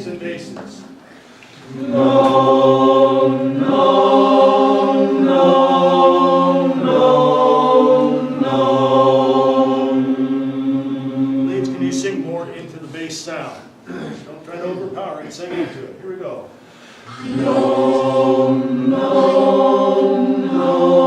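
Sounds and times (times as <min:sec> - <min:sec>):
chorus singing a cappella: 0:01.6 - 0:12.5, 0:17.0 - 0:21.0.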